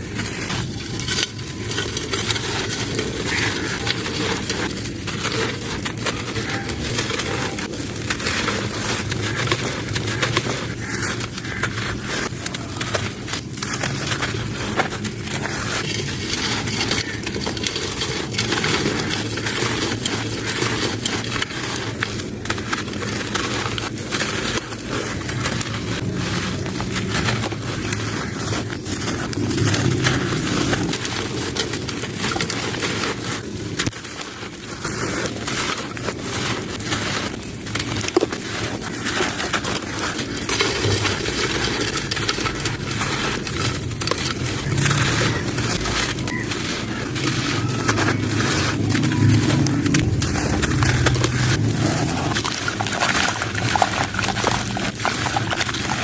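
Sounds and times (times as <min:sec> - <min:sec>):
sand-cement chunks crumbling: 0:00.0 - 0:56.0.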